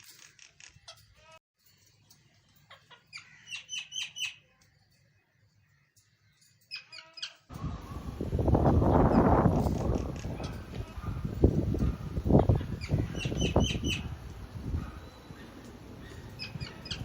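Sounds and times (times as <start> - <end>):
bird chirps: 1.6 - 7.4, 12.4 - 14.1.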